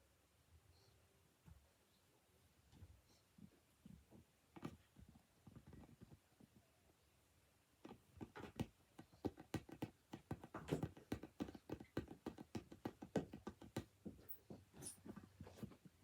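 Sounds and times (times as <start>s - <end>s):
light knocks and taps: 3.8s - 6.2s, 7.8s - 15.9s.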